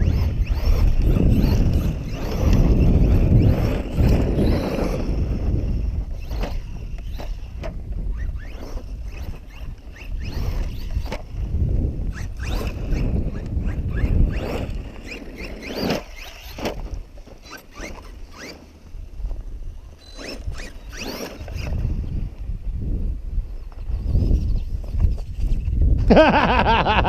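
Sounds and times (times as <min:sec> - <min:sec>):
rc truck clicks and rattles: 0:00.0 - 0:11.4, 0:12.1 - 0:21.9
electric motor whining: 0:00.0 - 0:22.2.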